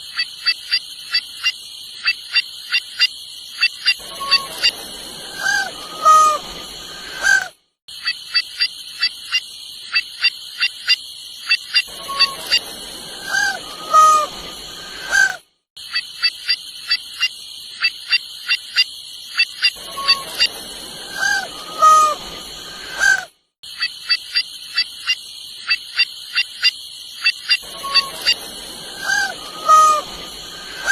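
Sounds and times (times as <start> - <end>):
jay nasal honking calls: 4.1 - 6.5, 11.9 - 14.4, 19.8 - 22.3, 27.6 - 30.9
high-pitched drone: 27.6 - 30.9.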